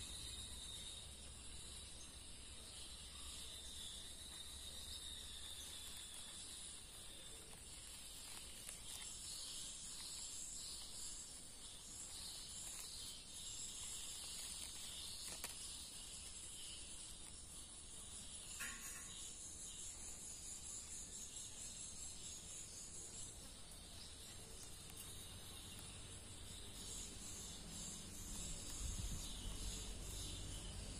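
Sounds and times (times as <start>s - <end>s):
insect chorus buzzing: 0.0s - 30.9s.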